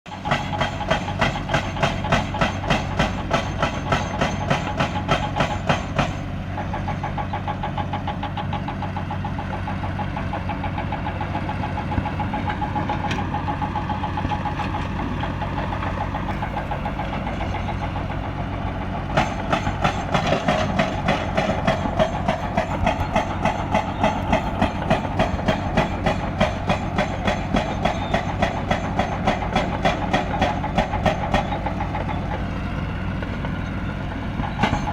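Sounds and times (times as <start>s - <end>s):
diesel engine low hum: 0.1s - 34.9s
engine clatter: 0.1s - 34.9s.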